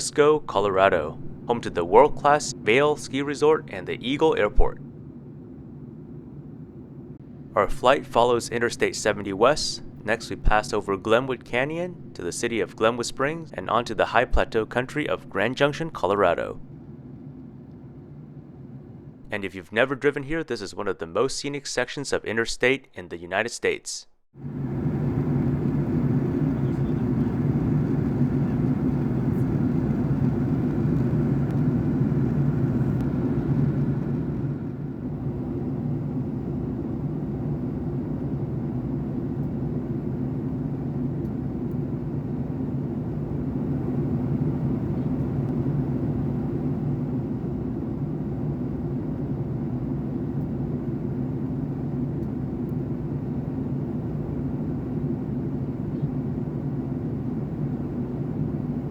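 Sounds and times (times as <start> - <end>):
airplane cabin drone: 0.0 - 19.6, 24.4 - 58.9.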